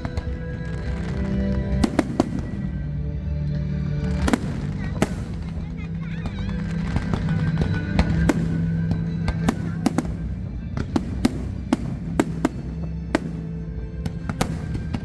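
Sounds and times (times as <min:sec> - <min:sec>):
fireworks bangs: 0:00.0 - 0:03.0, 0:04.1 - 0:15.0.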